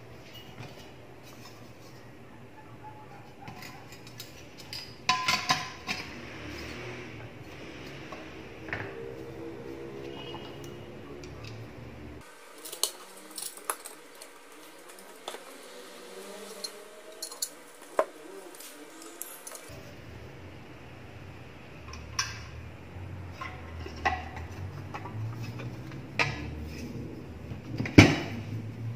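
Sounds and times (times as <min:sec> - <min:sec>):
small parts clicking and clinking: 0:03.5 - 0:06.8, 0:10.6 - 0:19.7.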